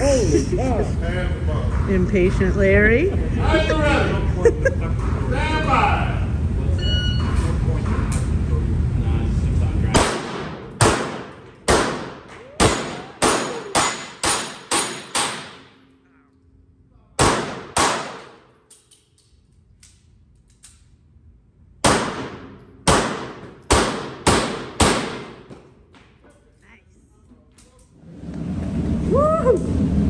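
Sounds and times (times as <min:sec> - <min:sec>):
pistol gunshots: 0:09.9 - 0:15.7, 0:17.2 - 0:18.4, 0:21.8 - 0:25.5.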